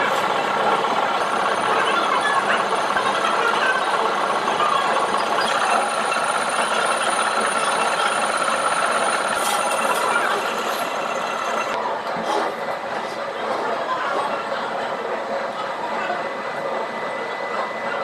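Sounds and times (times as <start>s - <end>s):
machinery running: 0.0s - 11.8s.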